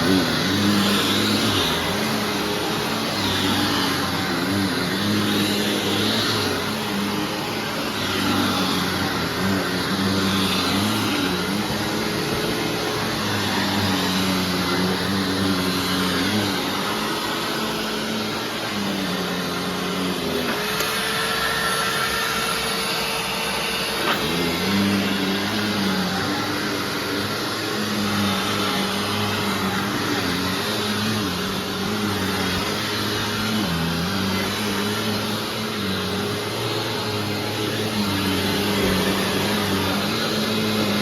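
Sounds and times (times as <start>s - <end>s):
upright vacuum running: 0.0s - 41.0s.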